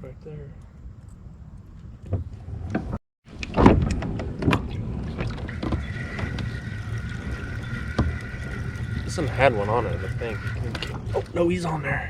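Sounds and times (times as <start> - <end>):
gear knocking on plastic kayak: 2.1 - 11.8
steady high whine: 3.4 - 12.0.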